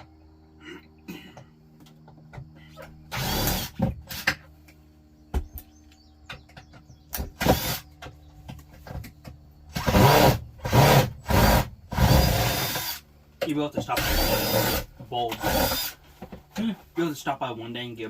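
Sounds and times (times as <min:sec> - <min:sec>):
steady low hum: 0:00.0 - 0:18.0
power drill running: 0:03.1 - 0:04.3, 0:07.4 - 0:07.9, 0:09.7 - 0:13.0, 0:14.0 - 0:16.0.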